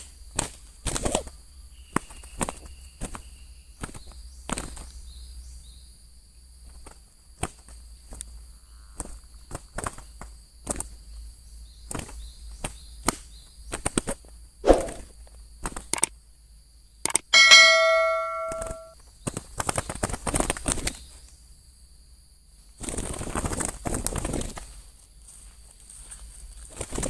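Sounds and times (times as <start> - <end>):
insects droning: 0.0 - 18.2, 19.0 - 27.0
sharp clicks and knocks: 17.1 - 18.9.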